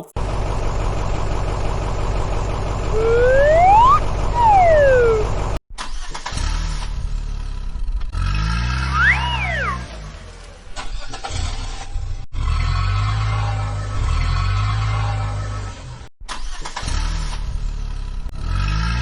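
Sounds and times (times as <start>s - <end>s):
engine rumble: 0.0s - 12.3s
rough engine rumble: 0.2s - 3.0s.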